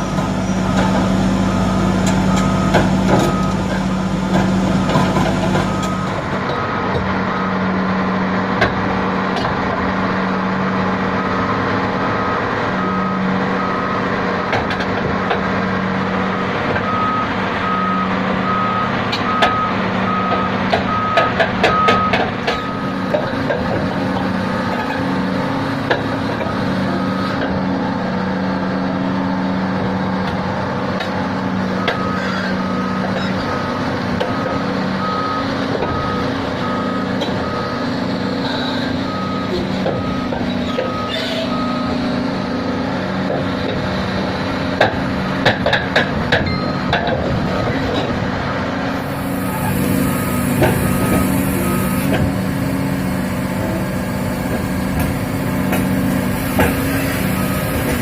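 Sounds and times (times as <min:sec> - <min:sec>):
reversing alarm beeping: 0:00.0 - 0:06.6, 0:11.2 - 0:14.2, 0:16.8 - 0:23.2, 0:26.4 - 0:27.6, 0:31.5 - 0:33.8, 0:34.6 - 0:42.5, 0:46.5 - 0:47.0, 0:48.4 - 0:58.0
diesel engine running: 0:00.0 - 0:58.0.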